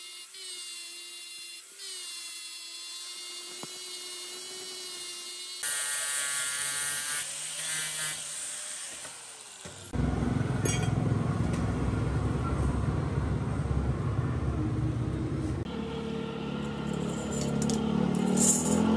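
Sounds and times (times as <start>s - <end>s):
high-pitched power tool: 0.0s - 9.9s
power tool motor whine: 0.0s - 10.0s
rough rumbling tool noise: 5.6s - 18.9s.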